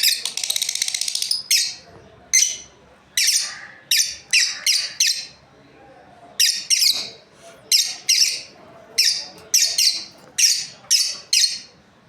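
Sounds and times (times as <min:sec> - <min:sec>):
lovebirds chirping: 0:06.4 - 0:11.7.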